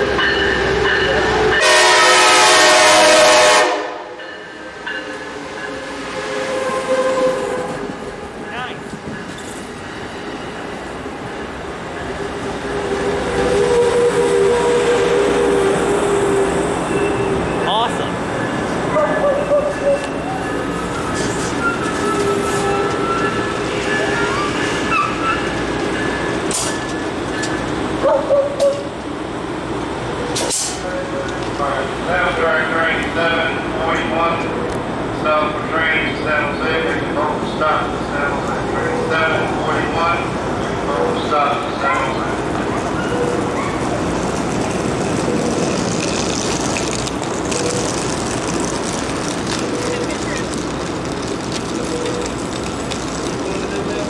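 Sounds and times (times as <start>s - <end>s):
train rolling: 0.0s - 54.0s
locomotive air horn: 1.3s - 4.1s, 5.8s - 7.9s, 12.8s - 16.4s.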